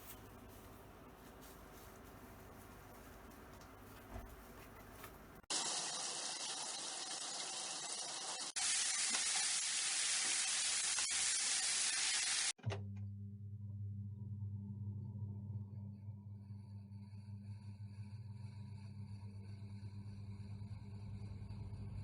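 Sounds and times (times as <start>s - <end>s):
loud hissing: 5.5s - 12.5s.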